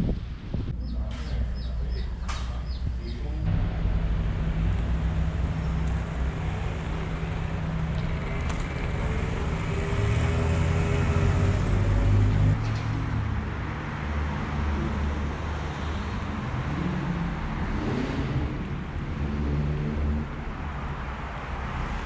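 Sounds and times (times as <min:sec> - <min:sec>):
wind noise: 0:00.0 - 0:11.4
engine humming: 0:00.0 - 0:17.8.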